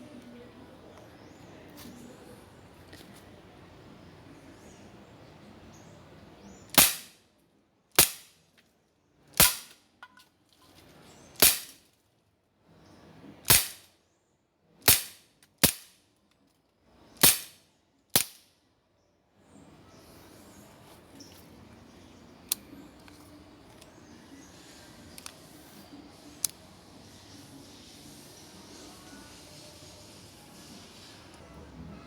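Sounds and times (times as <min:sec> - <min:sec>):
air pistol shots: 0:06.7 - 0:07.2, 0:08.0 - 0:08.4, 0:09.4 - 0:09.8, 0:11.4 - 0:11.8, 0:13.5 - 0:13.9, 0:14.8 - 0:16.0, 0:17.2 - 0:18.5.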